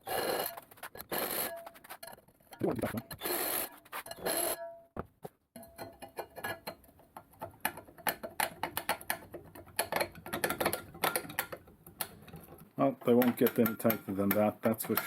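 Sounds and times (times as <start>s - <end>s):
metal fittings clicking and clinking: 5.6s - 15.0s.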